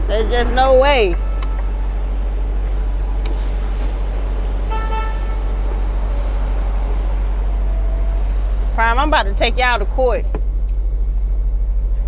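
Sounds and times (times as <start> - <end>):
truck horn toot: 1.2 - 1.8, 2.7 - 10.6
diesel truck engine idling: 2.5 - 12.0.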